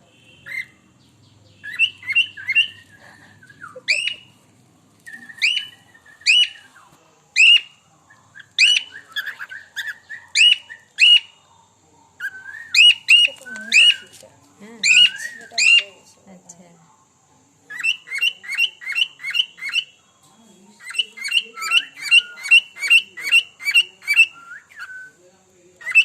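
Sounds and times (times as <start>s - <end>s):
pet bird calling: 0.2s - 4.4s, 5.0s - 6.8s, 7.4s - 11.4s, 12.2s - 14.2s, 14.8s - 16.1s, 17.7s - 20.0s, 20.8s - 25.0s, 25.8s - 26.0s.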